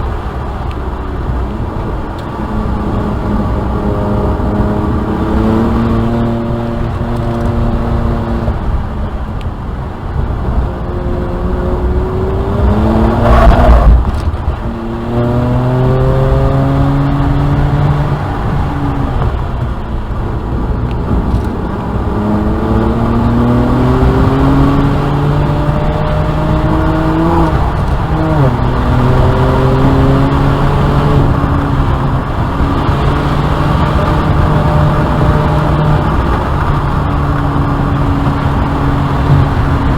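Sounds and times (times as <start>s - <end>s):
car engine accelerating hard: 0.0s - 39.9s.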